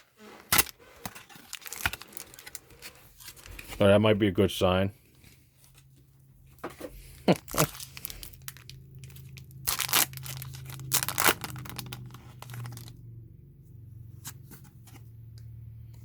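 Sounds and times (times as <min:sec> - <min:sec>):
foil wrapper tearing and crinkling: 0:00.5 - 0:03.8, 0:07.3 - 0:13.0
cards rustling: 0:00.5 - 0:04.0, 0:07.4 - 0:13.0.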